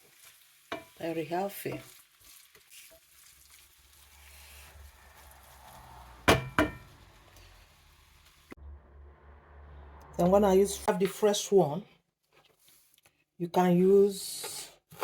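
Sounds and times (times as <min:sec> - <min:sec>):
faint sizzling from a pot: 0:00.0 - 0:08.6.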